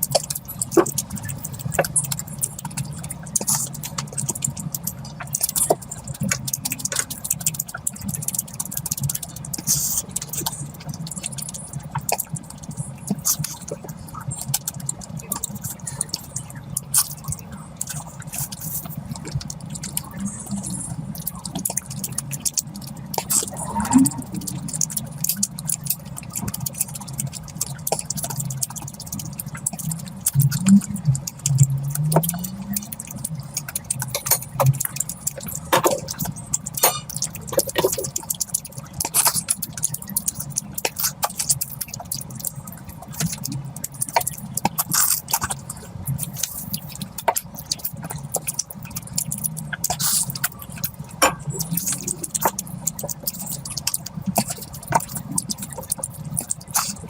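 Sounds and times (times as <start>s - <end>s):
wet chewing and smacking: 0.0s - 57.0s
steady low hum: 9.3s - 33.2s.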